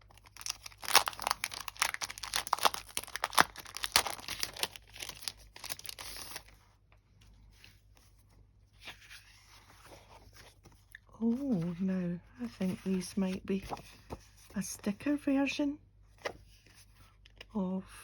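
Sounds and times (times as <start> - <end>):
packaging crinkling: 0.0 - 6.5.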